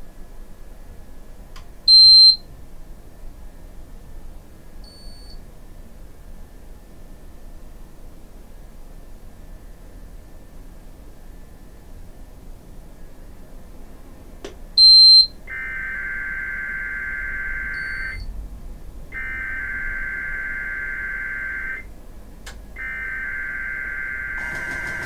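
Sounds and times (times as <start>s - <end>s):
high electronic beep: 14.8s - 18.3s.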